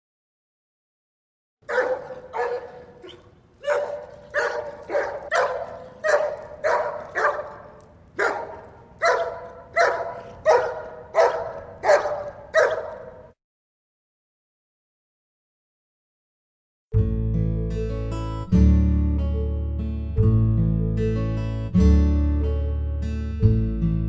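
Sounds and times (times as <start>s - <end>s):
dog barking: 1.6s - 13.4s.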